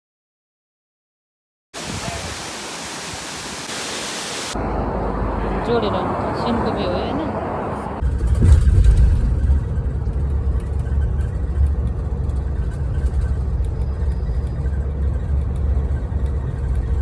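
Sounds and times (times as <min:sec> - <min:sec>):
bus engine and road rumble: 0:04.3 - 0:17.0.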